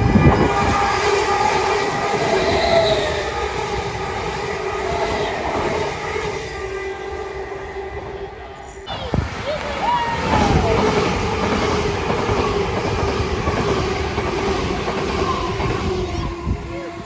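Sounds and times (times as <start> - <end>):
train wheel squeal: 0.0 - 6.1, 13.7 - 17.0
train rumbling on track: 0.0 - 17.0.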